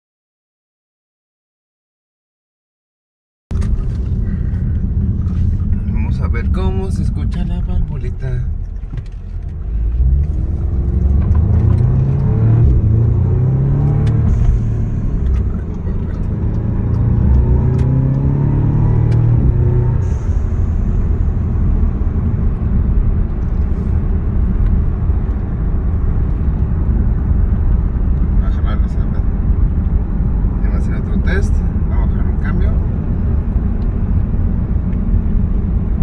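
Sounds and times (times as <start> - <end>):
car engine accelerating: 3.5 - 36.0
road rumble: 3.5 - 36.0.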